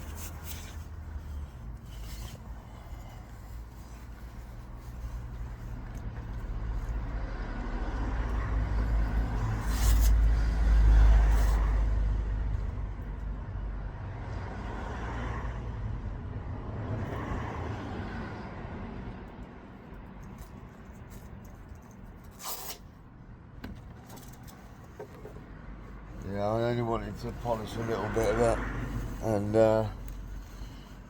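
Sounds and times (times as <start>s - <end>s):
vehicle passing by: 2.6s - 19.4s, 25.5s - 31.0s.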